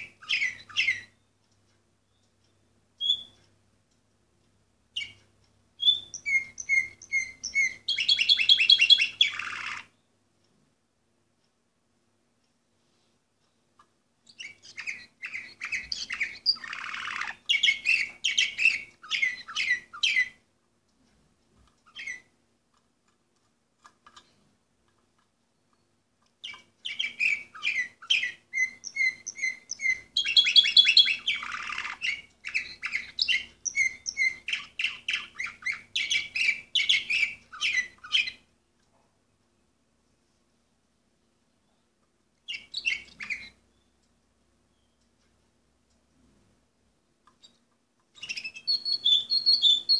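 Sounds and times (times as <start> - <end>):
canary singing trills: 0.0 - 1.4, 2.0 - 3.5, 4.9 - 10.2, 14.2 - 20.5, 21.8 - 22.4, 25.6 - 38.5, 41.6 - 45.2, 47.3 - 49.9.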